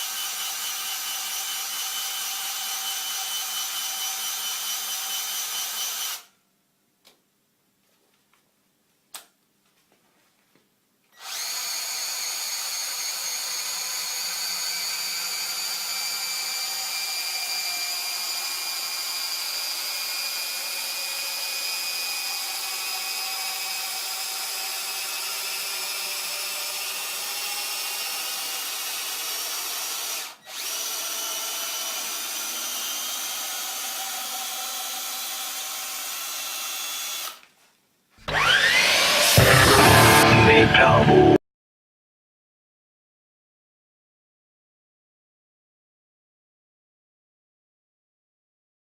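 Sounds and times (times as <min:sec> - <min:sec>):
cordless drill motor whine: 0:11.2 - 0:37.4, 0:38.3 - 0:40.2.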